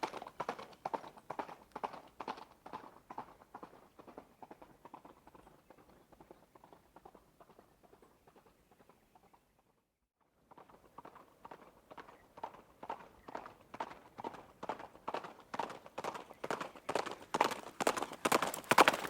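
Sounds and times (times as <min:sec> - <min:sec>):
horse hooves on hard ground: 0:10.5 - 0:19.0.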